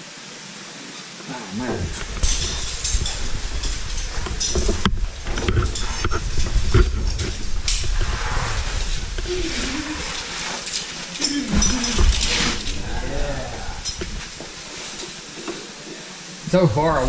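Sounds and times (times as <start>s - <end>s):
gear scraping against rock: 1.7s - 14.3s
person grunting: 12.7s - 13.8s.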